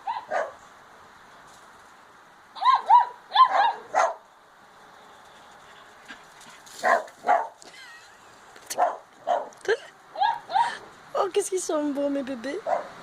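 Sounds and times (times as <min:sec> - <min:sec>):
puppies yipping and barking: 0:02.6 - 0:04.2, 0:10.1 - 0:10.9.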